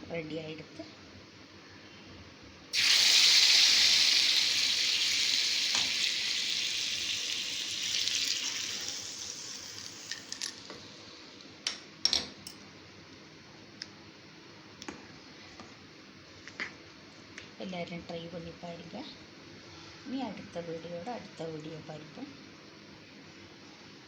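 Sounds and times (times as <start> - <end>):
hot oil sizzling: 2.7 - 11.0.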